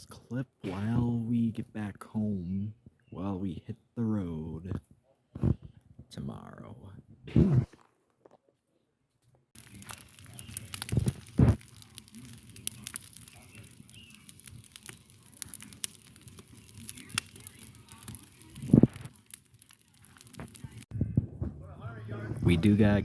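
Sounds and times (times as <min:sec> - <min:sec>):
campfire crackling and popping: 0:09.6 - 0:21.0, 0:21.8 - 0:23.0
low thuds: 0:20.5 - 0:22.8.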